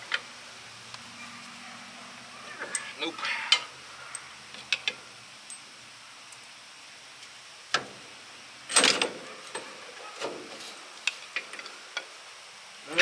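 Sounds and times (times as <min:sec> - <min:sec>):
metal tools clanking: 0:08.7 - 0:12.1.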